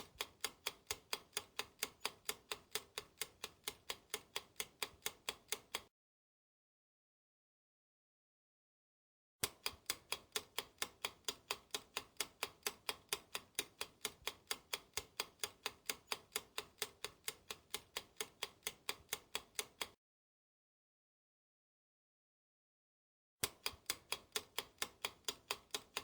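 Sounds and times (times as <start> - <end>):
fast clock ticking: 0.0 - 5.9, 9.4 - 20.0, 23.4 - 26.0.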